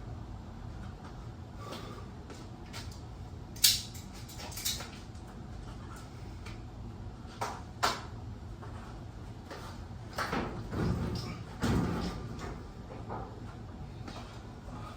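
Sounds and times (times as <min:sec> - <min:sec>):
low steady hum: 0:00.0 - 0:14.9.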